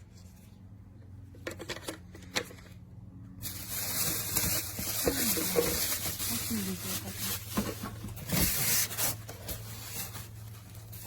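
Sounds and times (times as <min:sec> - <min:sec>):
packaging clicks and crinkles: 0:03.4 - 0:11.0
packaging rustling hiss: 0:03.4 - 0:11.0.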